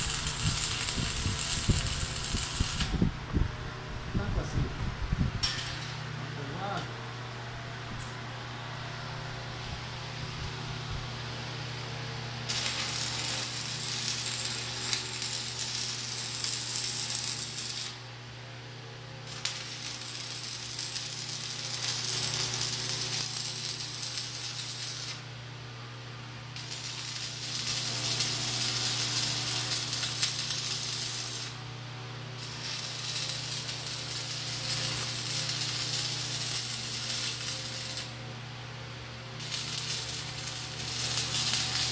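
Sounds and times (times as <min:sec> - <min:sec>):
welding arc crackling and hissing: 0:00.0 - 0:03.1, 0:12.4 - 0:18.1, 0:19.2 - 0:25.3, 0:26.5 - 0:31.6, 0:32.4 - 0:38.2, 0:39.4 - 0:41.9
steady low hum: 0:00.0 - 0:41.9.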